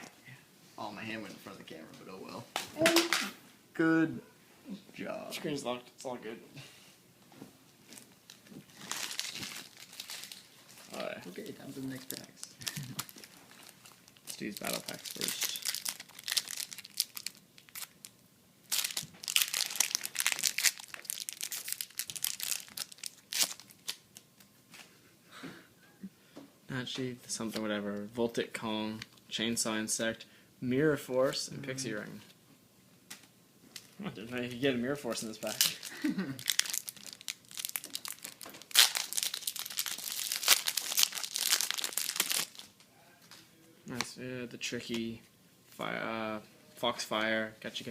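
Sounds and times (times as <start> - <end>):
foil wrappers crinkling: 7.9 - 24.5, 35.1 - 42.8.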